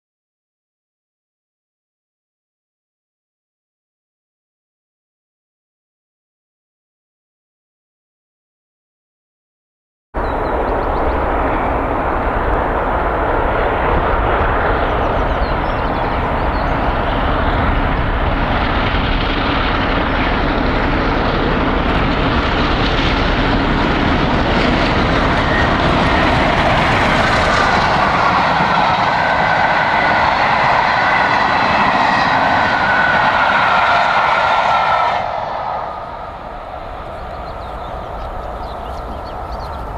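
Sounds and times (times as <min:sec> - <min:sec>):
steam locomotive passing: 0:10.2 - 0:39.9.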